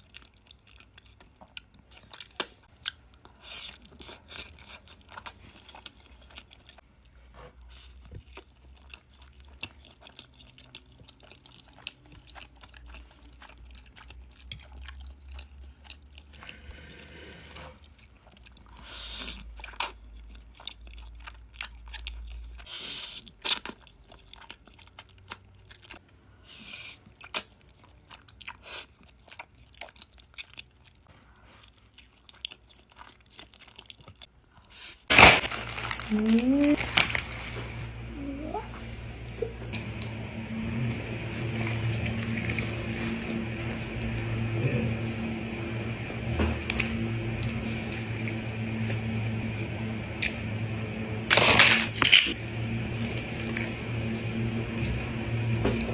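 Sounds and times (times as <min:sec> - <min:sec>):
crunchy eating and chewing: 0:00.0 - 0:38.1, 0:51.3 - 0:55.9
small crackles: 0:35.1 - 0:37.8.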